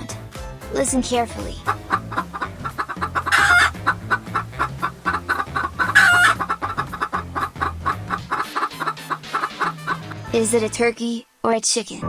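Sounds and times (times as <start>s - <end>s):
chicken squawk: 1.6s - 10.2s
chickens clucking: 1.6s - 10.2s.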